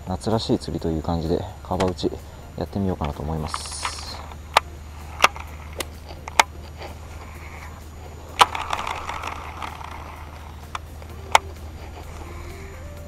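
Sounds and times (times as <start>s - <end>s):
steady low hum: 0.0s - 13.0s
sharp clicks and knocks: 1.7s - 2.1s, 2.9s - 7.7s.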